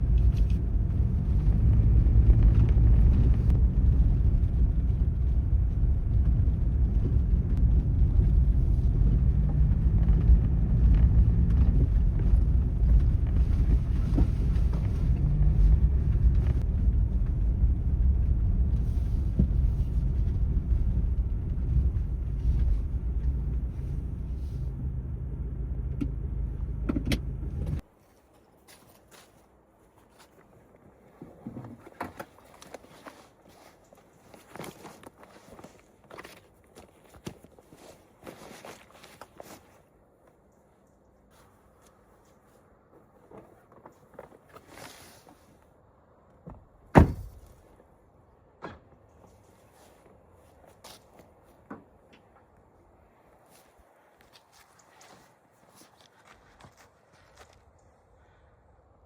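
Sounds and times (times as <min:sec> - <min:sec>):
vehicle engine rumble: 0:00.0 - 0:27.9, 0:31.5 - 0:58.5.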